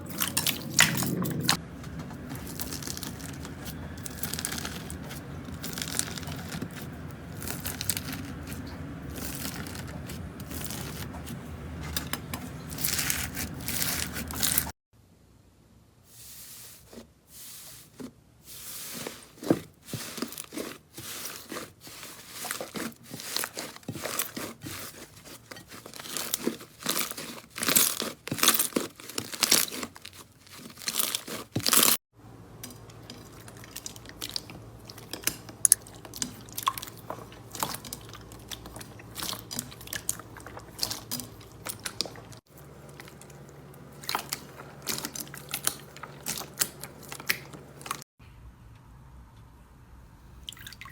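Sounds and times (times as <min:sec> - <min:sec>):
low steady hum: 0:00.0 - 0:27.0
slime crackling and popping: 0:02.4 - 0:11.0.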